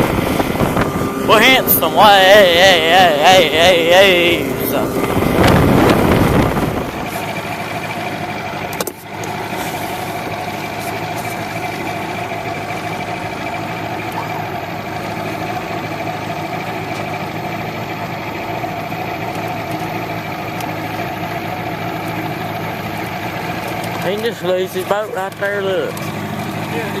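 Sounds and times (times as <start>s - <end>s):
loud rushing noise: 0.0s - 7.4s
outboard motor drone: 0.0s - 27.0s.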